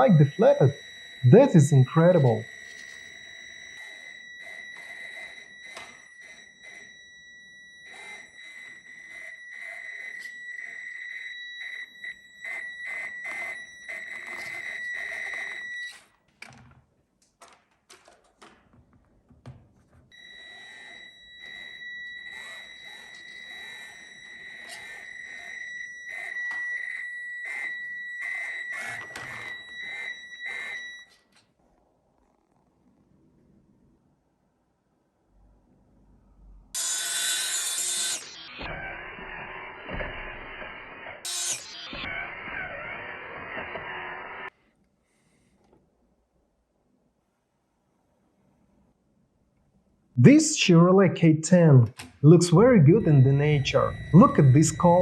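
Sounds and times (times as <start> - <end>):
high-pitched electric motor whine: 0.0 - 15.9, 20.2 - 31.0, 36.8 - 44.5, 53.0 - 55.0.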